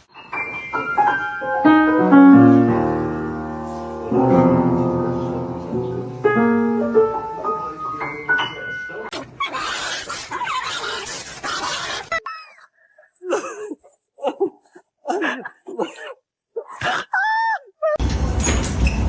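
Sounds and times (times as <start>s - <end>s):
piano music: 0.0s - 9.1s.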